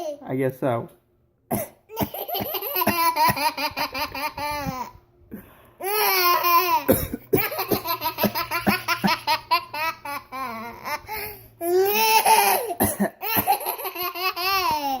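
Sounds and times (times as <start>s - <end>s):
person pretend coughing: 1.5s - 3.2s, 6.9s - 8.9s, 12.6s - 13.6s
baby laughing: 1.9s - 5.0s, 5.8s - 15.0s.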